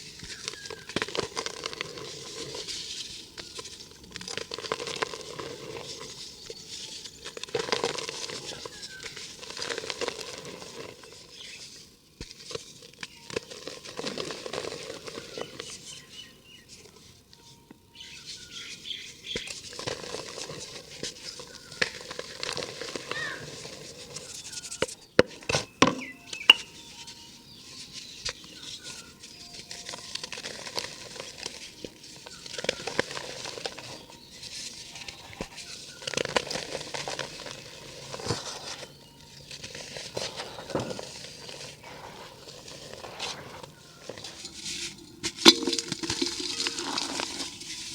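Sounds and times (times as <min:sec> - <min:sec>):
dry cement crumbled by hand: 0:00.1 - 0:06.4, 0:07.2 - 0:11.2, 0:19.4 - 0:26.0, 0:28.3 - 0:47.9.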